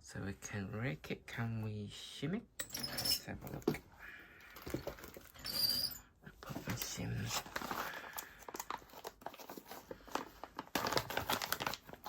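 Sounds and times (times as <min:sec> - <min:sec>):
crinkling and rustling: 0:02.9 - 0:12.0.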